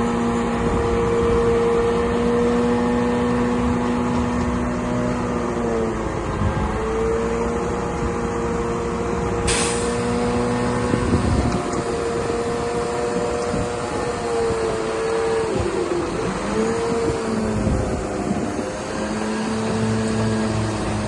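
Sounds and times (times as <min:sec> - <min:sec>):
bulldozer engine running: 0:00.0 - 0:21.0
short hiss: 0:09.4 - 0:10.1.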